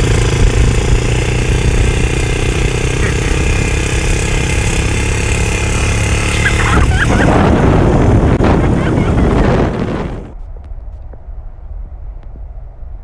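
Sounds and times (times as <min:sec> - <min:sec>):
atv engine running: 0:00.0 - 0:10.3.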